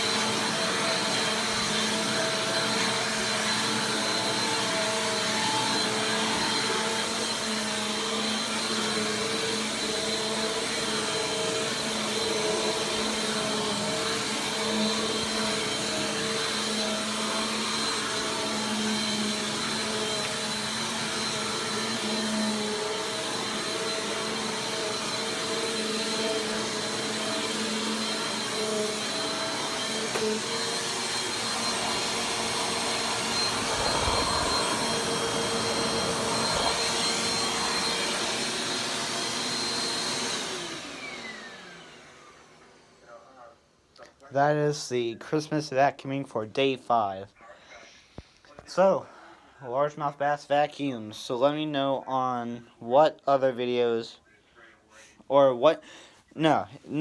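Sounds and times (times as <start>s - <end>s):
vacuum cleaner running: 0.0s - 43.2s.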